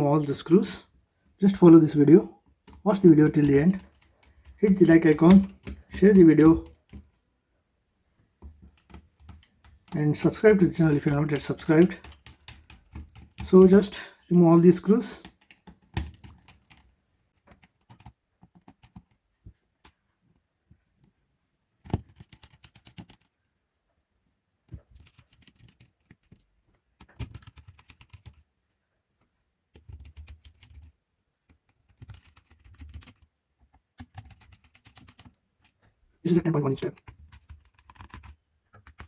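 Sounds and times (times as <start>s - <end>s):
handling taps: 2.6s - 7.2s.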